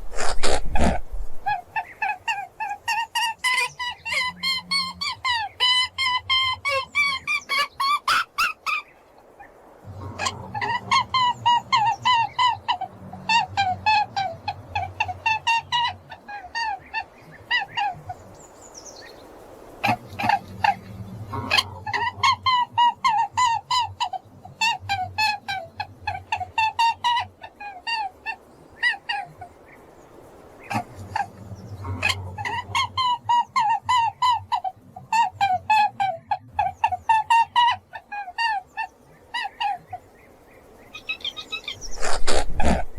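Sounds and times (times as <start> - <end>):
rabbit squeaking: 0.0 - 1.5, 41.0 - 42.9
low background rumble: 0.0 - 42.9
honking animal calls: 10.0 - 18.2, 19.8 - 28.2.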